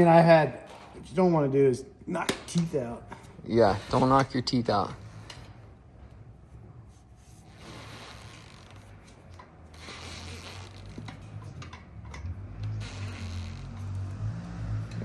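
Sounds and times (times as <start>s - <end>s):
rubber rubbing and scraping: 6.6s - 11.4s
tire iron clicks: 7.9s - 14.2s.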